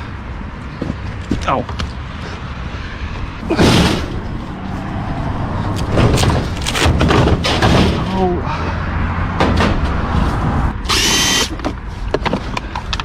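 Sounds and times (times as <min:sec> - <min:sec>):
loud bang: 0:03.4 - 0:04.4
items clattering in a dumpster: 0:03.5 - 0:04.3, 0:05.8 - 0:08.3.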